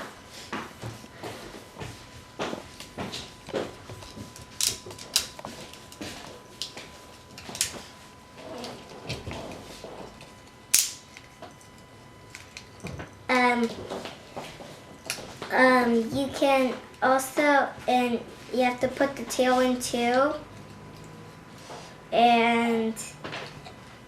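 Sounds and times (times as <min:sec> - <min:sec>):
sharp snap: 0:10.7 - 0:11.0.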